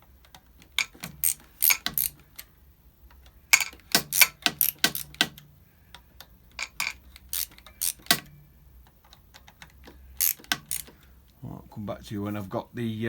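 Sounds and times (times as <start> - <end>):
metallic tool clicks and clinks: 3.5 - 5.3.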